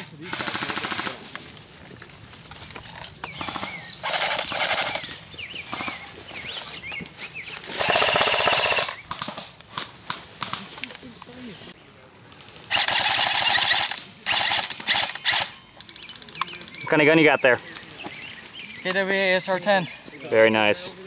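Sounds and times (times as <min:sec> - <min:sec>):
airsoft guns firing bursts: 0:00.0 - 0:01.2, 0:03.4 - 0:05.0, 0:07.8 - 0:09.4, 0:12.7 - 0:15.6
bird chirping: 0:03.0 - 0:09.2, 0:14.9 - 0:21.0.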